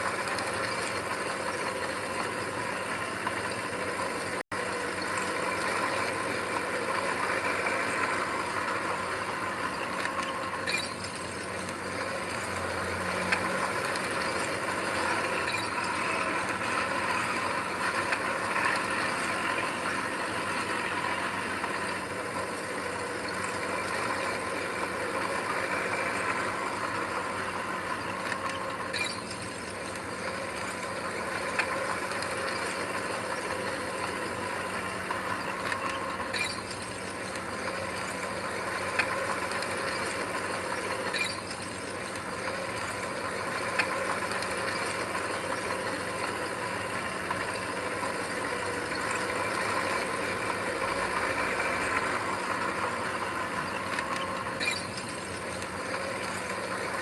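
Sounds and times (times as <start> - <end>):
metallic clatter of machinery: 0.0 - 57.0.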